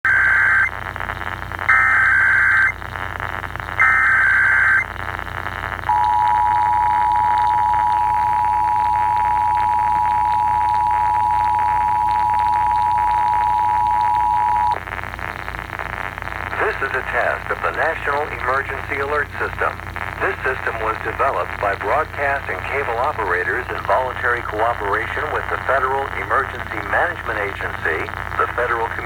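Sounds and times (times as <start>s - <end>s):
radio static: 0.0s - 29.0s
two-tone attention signal: 5.9s - 14.8s.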